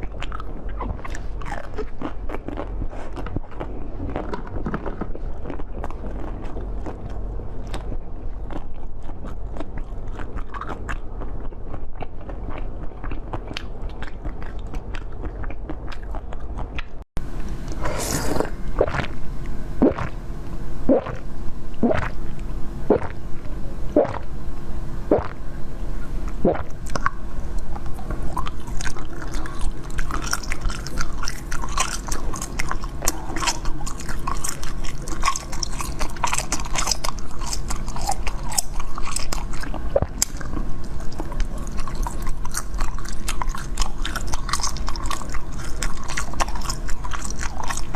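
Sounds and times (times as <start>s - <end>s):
biting and chewing: 0.0s - 17.0s, 17.7s - 20.2s, 21.8s - 24.3s, 26.3s - 47.9s
crunching: 0.1s - 16.9s, 27.8s - 47.9s.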